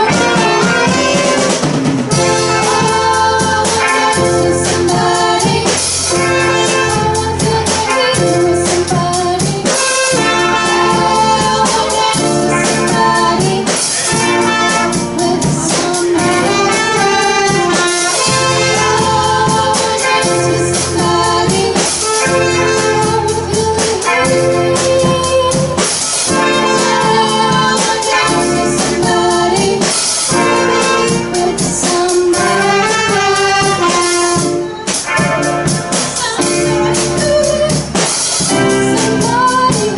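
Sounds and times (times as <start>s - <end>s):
drums keeping steady beat: 0.0s - 39.9s
live band playing: 0.0s - 39.9s.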